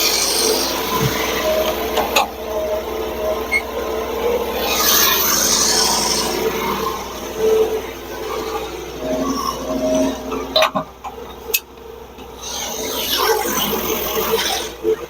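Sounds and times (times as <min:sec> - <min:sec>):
band blade sawing log: 0:00.0 - 0:02.1, 0:04.5 - 0:07.8
sawmill engine humming: 0:00.0 - 0:15.0.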